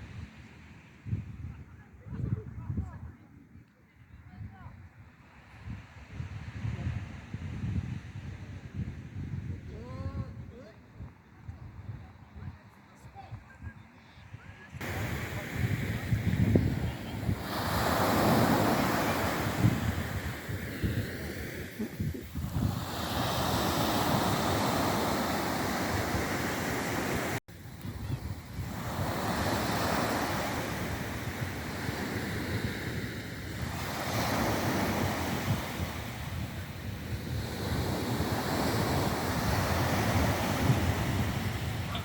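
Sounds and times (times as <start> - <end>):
wind buffeting microphone: 5.6 - 12.6, 14.4 - 42.0
sea waves breaking on shore: 14.8 - 42.0.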